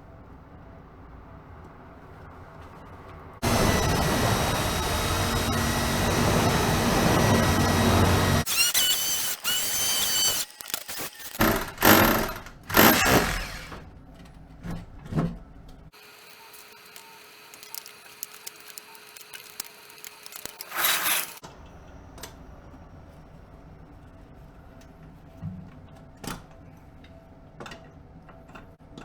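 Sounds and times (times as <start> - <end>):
power tool running: 3.4 - 13.8, 16.0 - 21.4
power tool squeal: 3.4 - 13.8, 19.4 - 21.4.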